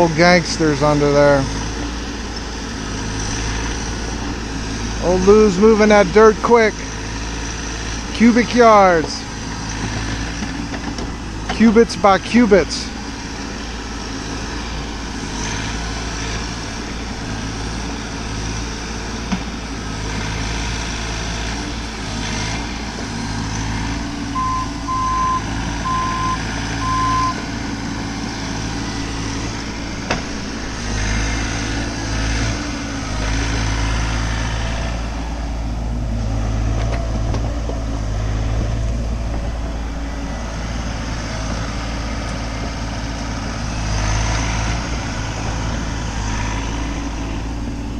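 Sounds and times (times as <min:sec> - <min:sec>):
heavy machine engine running: 0:00.0 - 0:47.9
backup alarm beeping: 0:24.4 - 0:27.4.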